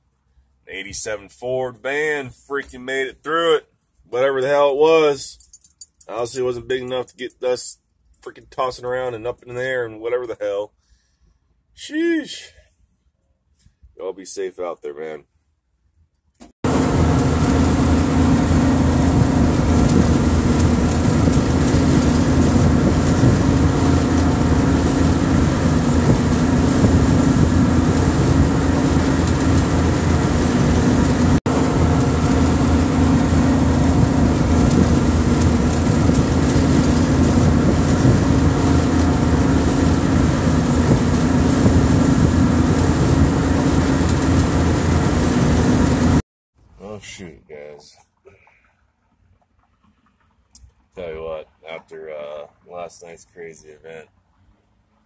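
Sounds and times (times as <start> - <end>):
vehicle engine and road noise: 16.6 - 46.2.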